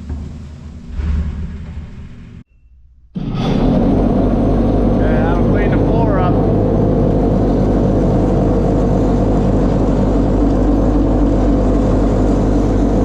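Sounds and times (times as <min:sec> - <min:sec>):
farm machinery droning: 0:00.0 - 0:13.0.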